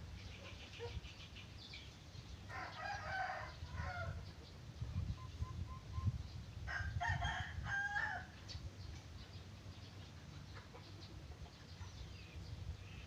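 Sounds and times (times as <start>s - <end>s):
rooster crowing: 2.5s - 4.2s, 6.7s - 8.3s.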